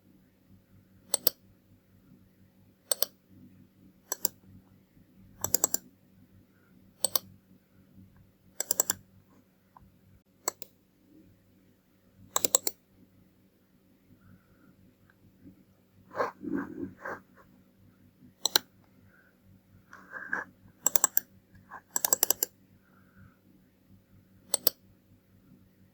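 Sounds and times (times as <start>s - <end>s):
faint low hum: 0.0s - 25.9s
computer mouse buttons clicking: 1.1s - 1.4s, 2.9s - 3.2s, 4.1s - 4.4s, 5.4s - 5.9s, 7.0s - 7.3s, 8.6s - 9.0s, 10.4s - 10.8s, 12.3s - 12.8s, 18.4s - 18.7s, 20.8s - 22.5s, 24.5s - 24.8s.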